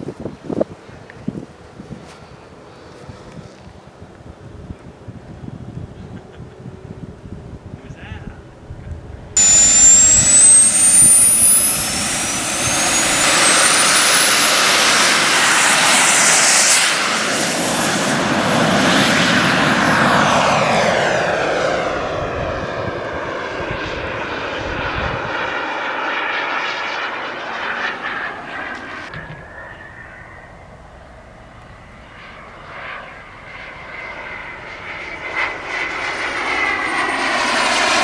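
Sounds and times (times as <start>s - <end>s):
model jet whine: 9.0s - 38.0s
loud rushing noise: 9.4s - 18.8s.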